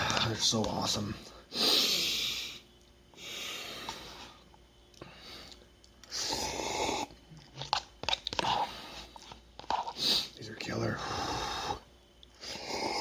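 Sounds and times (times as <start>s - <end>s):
wet chewing clicks: 7.0s - 10.0s.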